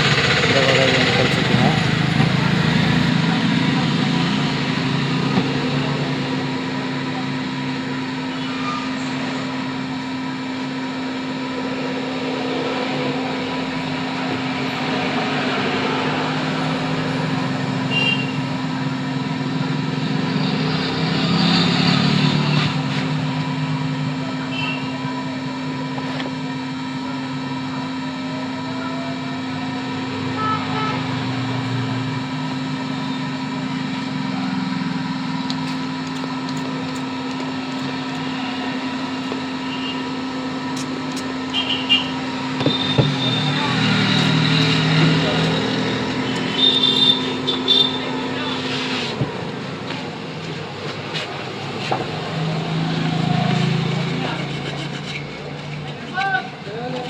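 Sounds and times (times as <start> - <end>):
hot-air blower humming: 0.0 - 3.4, 25.0 - 54.5.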